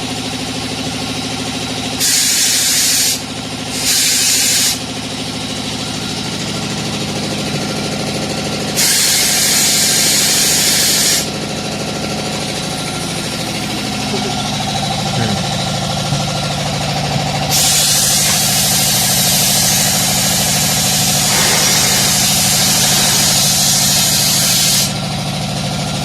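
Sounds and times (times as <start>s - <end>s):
compressed air hissing: 2.0s - 3.2s, 3.8s - 4.8s, 8.8s - 11.3s, 17.5s - 25.0s
steady machine drone: 3.4s - 26.0s.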